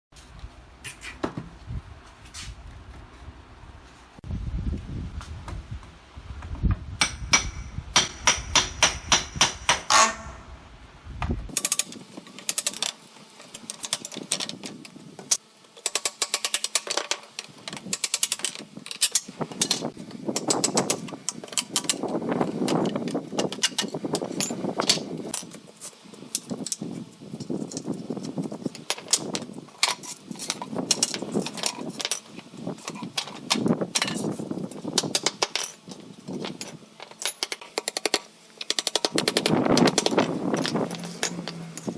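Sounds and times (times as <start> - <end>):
hammering on wood: 7.0 - 10.2
tools clattering: 15.8 - 25.6, 28.6 - 41.9.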